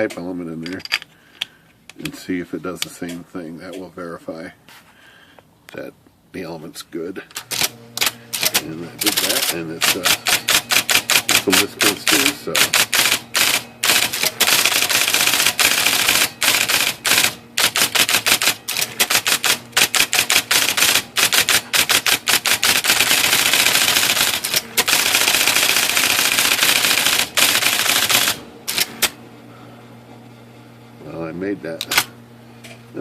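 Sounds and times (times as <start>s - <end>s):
electric typewriter clattering keystrokes: 7.3s - 29.2s, 31.8s - 32.1s.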